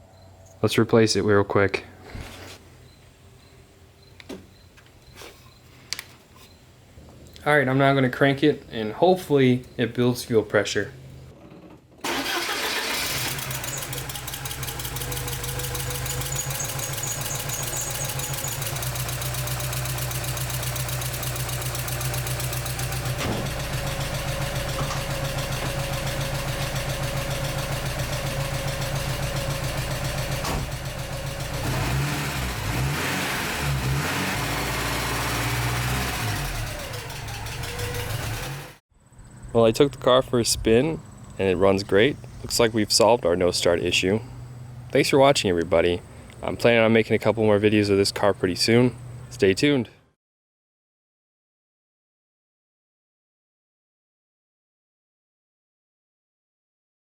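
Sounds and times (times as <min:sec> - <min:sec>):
car engine starting and running: 0:12.0 - 0:38.8.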